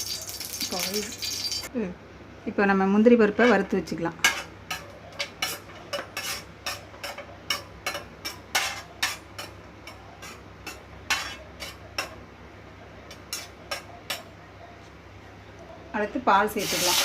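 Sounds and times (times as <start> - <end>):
metal spoon scraping a pan: 3.4 - 12.1, 13.1 - 14.3, 16.6 - 17.0.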